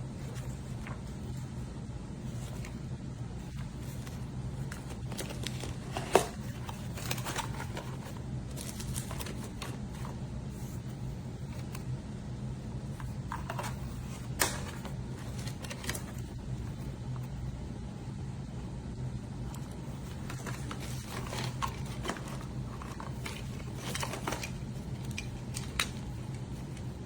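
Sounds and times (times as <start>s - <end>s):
steady low hum: 0.0s - 27.0s
clicks and knocks of handling: 3.5s - 10.2s, 13.0s - 16.3s, 19.5s - 27.0s.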